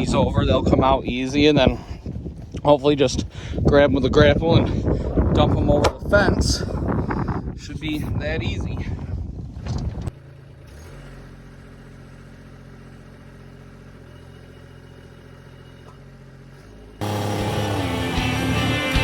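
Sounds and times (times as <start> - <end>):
tractor diesel engine running: 0.0 - 19.0
guitar music: 17.0 - 19.0.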